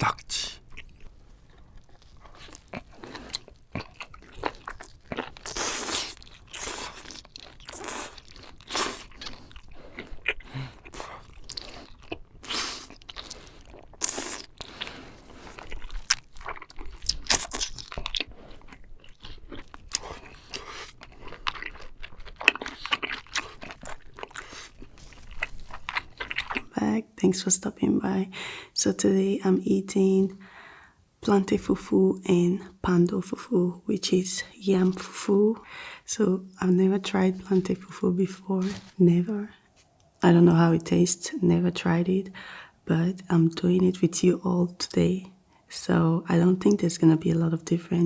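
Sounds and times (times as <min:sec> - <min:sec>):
person chewing with wet crunches: 0:00.0 - 0:26.8.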